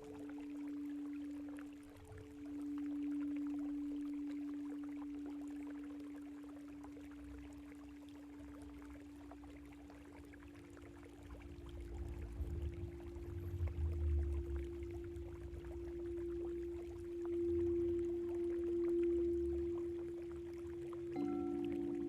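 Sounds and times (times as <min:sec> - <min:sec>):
singing bowl ringing: 0:00.0 - 0:09.0, 0:10.6 - 0:22.0
trickling water: 0:00.0 - 0:22.0.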